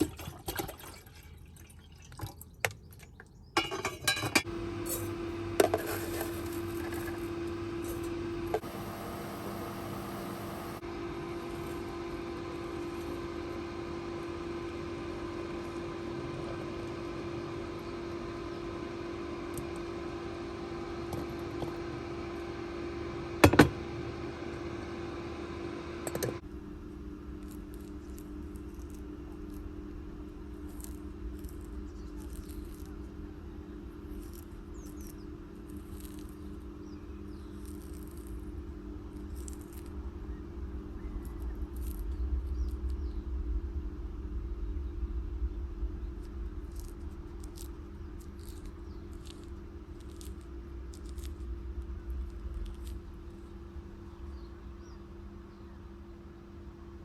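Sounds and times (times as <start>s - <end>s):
small birds chirping: 1.7s - 3.6s, 31.6s - 38.5s, 39.1s - 43.4s, 44.6s - 50.3s, 52.6s - 56.2s
steady low hum: 3.3s - 57.0s.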